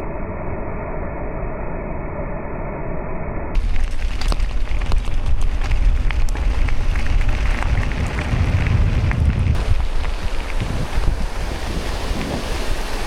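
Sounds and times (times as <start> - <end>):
bicycle tyres on gravel: 3.6 - 13.0
wind buffeting microphone: 3.6 - 13.0.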